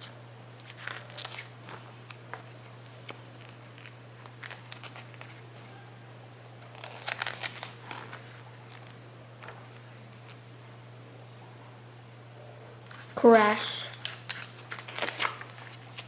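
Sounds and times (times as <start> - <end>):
book pages rustling: 0.0 - 5.4, 6.7 - 10.4, 13.9 - 16.0
low electrical hum: 0.0 - 16.0.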